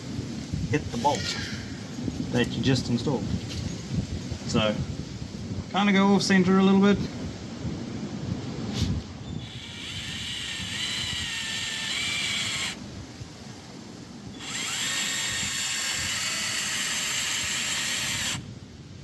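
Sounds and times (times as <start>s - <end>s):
power drill driving screw into wood: 9.4s - 12.8s, 14.4s - 18.5s.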